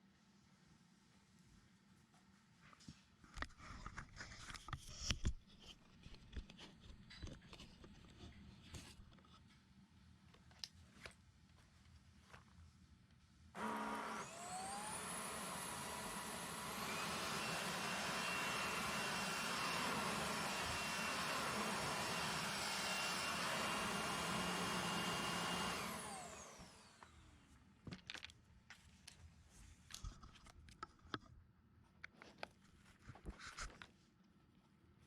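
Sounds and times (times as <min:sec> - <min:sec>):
stick vacuum cleaner running: 0:13.6 - 0:27.4.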